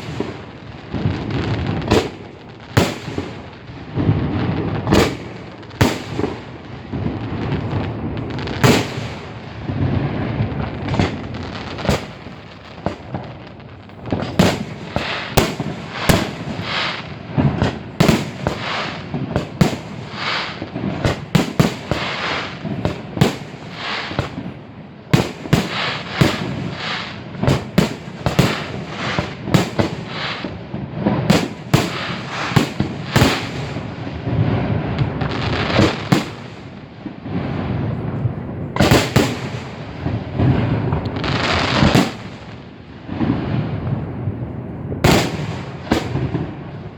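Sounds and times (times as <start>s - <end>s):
firework shells bursting: 4.4s - 24.5s.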